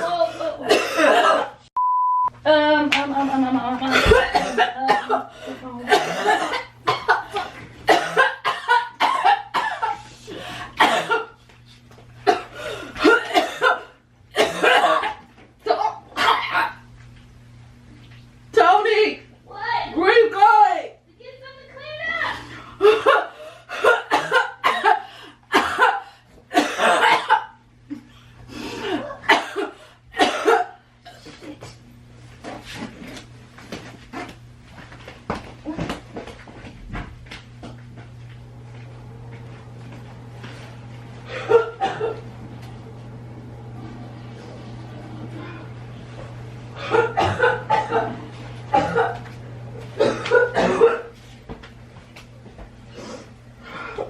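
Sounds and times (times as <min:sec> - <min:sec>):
person coughing: 0:00.4 - 0:01.6, 0:03.8 - 0:10.0, 0:10.8 - 0:11.4, 0:12.2 - 0:15.2, 0:15.8 - 0:16.8, 0:22.8 - 0:27.6, 0:28.8 - 0:31.7, 0:41.3 - 0:42.2, 0:46.8 - 0:49.2, 0:50.0 - 0:51.2.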